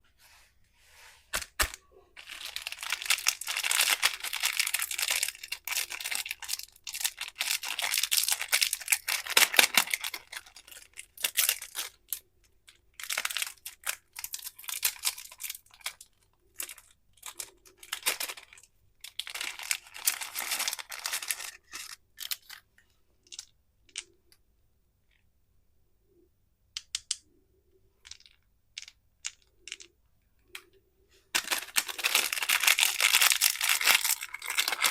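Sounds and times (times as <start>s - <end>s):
candy wrappers crinkling: 1.4s - 22.6s, 31.4s - 34.9s.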